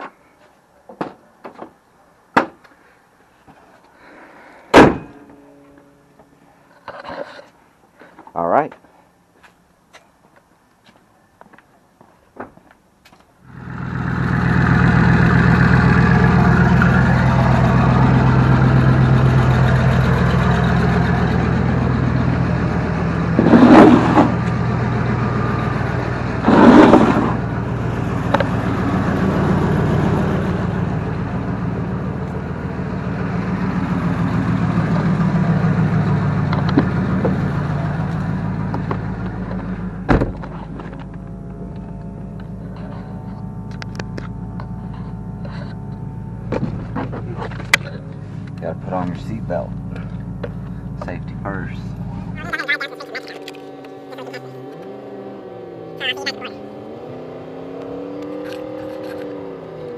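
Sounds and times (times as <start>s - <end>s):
car engine starting and running: 13.4s - 59.9s
loud engine revs: 13.5s - 59.9s.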